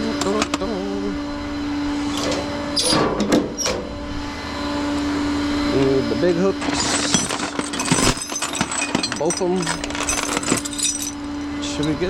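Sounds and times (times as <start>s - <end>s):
metal clanks: 6.6s - 11.4s.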